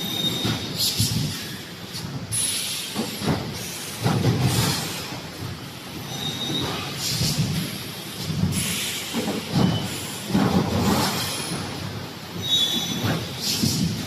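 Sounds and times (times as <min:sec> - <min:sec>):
air hiss bursts: 0:00.6 - 0:05.2, 0:06.2 - 0:10.3.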